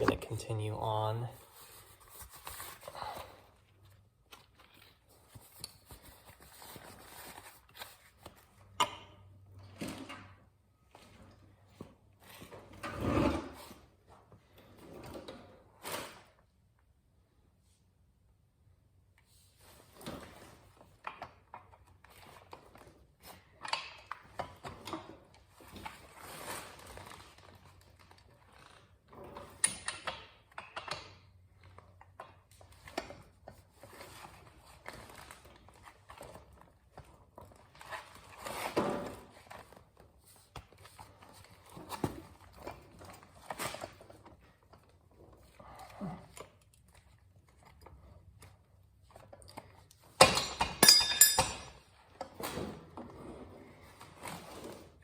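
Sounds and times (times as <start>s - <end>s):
hand tools clicking and scraping: 50.2s - 51.9s.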